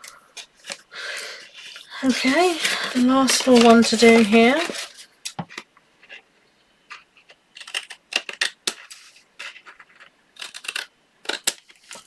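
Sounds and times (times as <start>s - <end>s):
scissors snipping cardstock: 2.1s - 4.9s, 10.4s - 12.0s.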